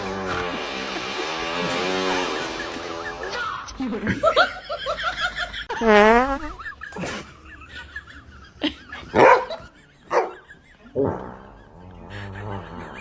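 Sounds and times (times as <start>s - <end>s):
buzzy fart noise: 0.0s - 3.3s, 5.7s - 7.3s
dog barking: 9.1s - 10.4s.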